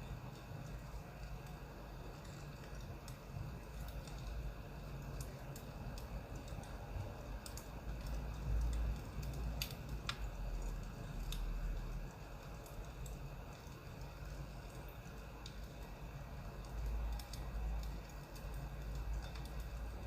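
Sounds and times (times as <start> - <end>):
firewood crackling and popping: 0.0 - 20.0.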